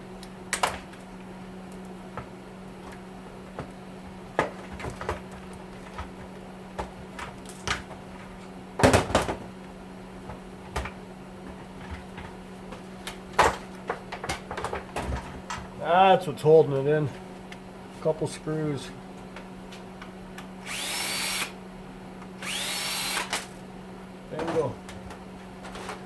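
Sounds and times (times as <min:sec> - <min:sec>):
plastic and metal parts clattering: 0:25.6 - 0:26.0.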